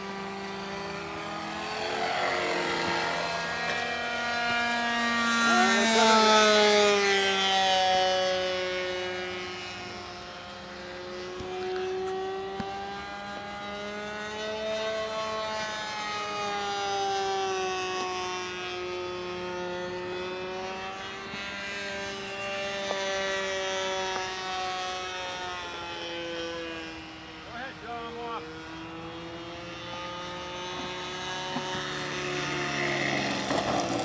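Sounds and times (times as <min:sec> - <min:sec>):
model airplane engine drone: 0:00.0 - 0:34.0.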